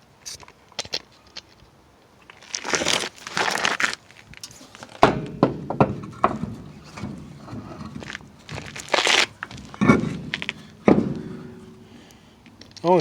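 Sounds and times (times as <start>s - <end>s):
knocks: 5.0s - 8.8s, 9.4s - 12.0s.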